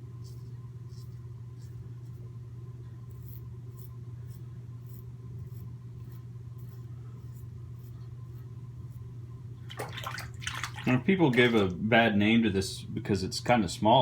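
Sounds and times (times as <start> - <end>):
steady low hum: 0.0 - 14.0
razor scraping stubble: 3.0 - 9.1.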